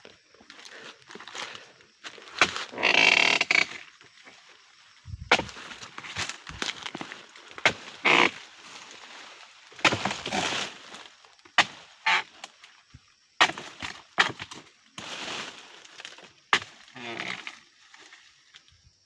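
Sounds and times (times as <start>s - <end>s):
rustling crashes of fronds: 5.3s - 12.5s, 13.4s - 18.2s.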